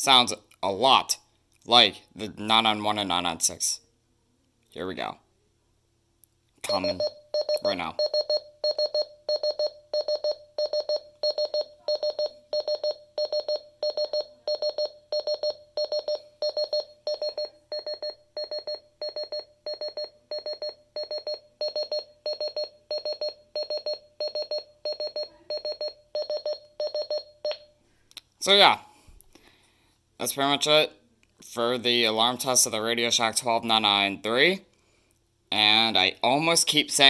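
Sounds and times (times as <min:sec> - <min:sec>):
alarm clock short beeps: 0:06.6 - 0:27.6.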